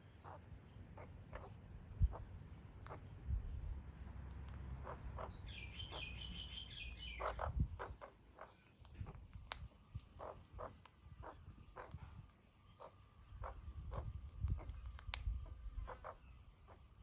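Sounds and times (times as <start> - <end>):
magpie warbling call: 4.8 - 8.6.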